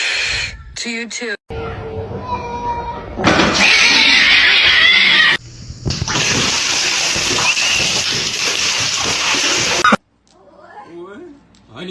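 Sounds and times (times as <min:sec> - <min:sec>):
water rushing and splashing: 0:05.9 - 0:10.0.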